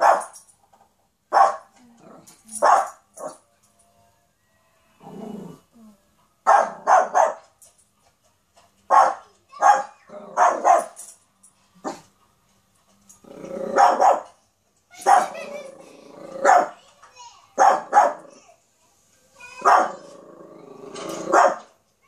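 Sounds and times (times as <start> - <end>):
puppy barking: 0.0 - 0.4, 1.3 - 1.7, 2.6 - 3.4, 6.5 - 7.5, 8.9 - 11.0, 13.8 - 14.4, 15.0 - 15.5, 16.4 - 16.8, 17.6 - 18.4, 19.6 - 20.1, 21.3 - 21.7.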